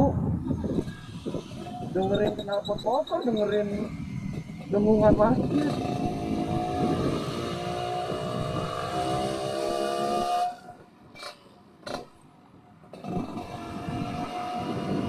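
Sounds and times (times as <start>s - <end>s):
motorcycle exhaust droning: 13.1s - 15.0s.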